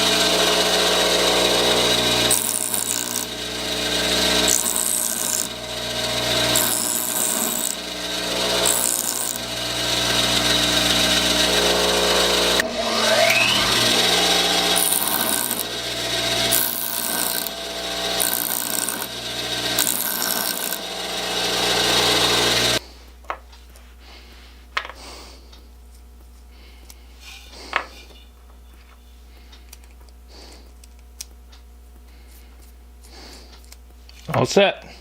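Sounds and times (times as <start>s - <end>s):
power tool motor running: 0.0s - 22.8s.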